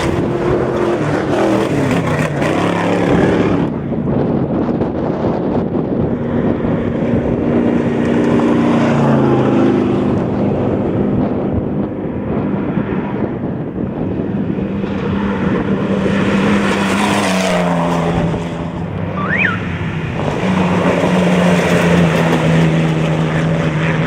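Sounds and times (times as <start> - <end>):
race truck engine running hard: 0.0 - 24.0
brief high chirp: 19.2 - 19.6.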